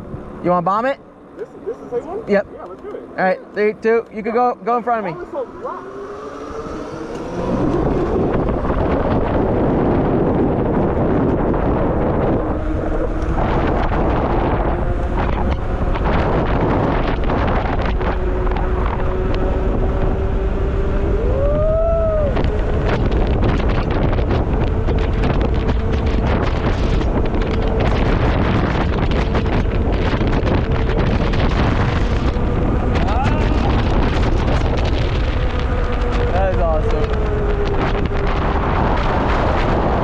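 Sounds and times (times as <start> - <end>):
wind buffeting microphone: 0.0 - 40.0
electric motor whine: 1.3 - 40.0
rattling over rough ground: 22.4 - 40.0.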